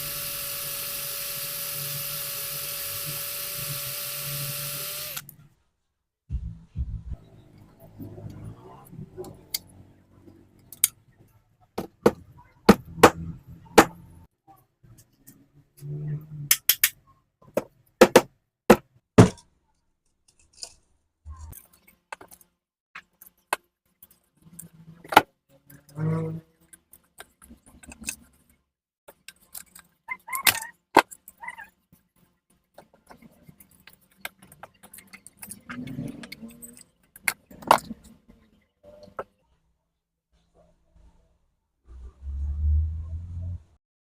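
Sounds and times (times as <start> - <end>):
small parts and tools clicking: 10.5 - 11.4, 19.4 - 39.4.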